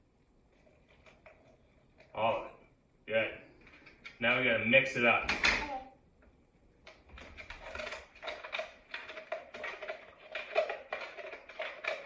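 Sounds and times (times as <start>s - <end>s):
spoon stirring in a cup: 7.4s - 12.0s.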